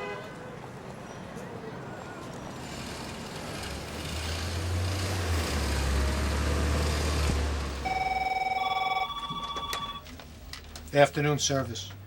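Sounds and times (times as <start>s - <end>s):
vehicle engine rumble: 0.5s - 8.2s
telephone ringing: 7.8s - 10.1s.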